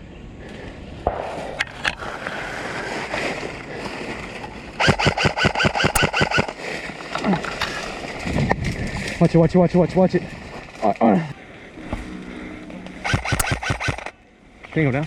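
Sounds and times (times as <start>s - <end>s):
rustling noise: 1.3s - 4.8s, 6.4s - 11.1s
airsoft gun rapid burst: 4.8s - 6.5s, 13.0s - 14.1s
sharp clicks: 4.8s - 6.5s, 13.0s - 14.2s.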